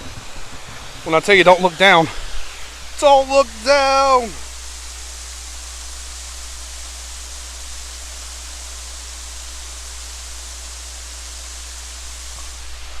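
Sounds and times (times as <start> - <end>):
water rushing over dam falls: 0.0 - 4.6.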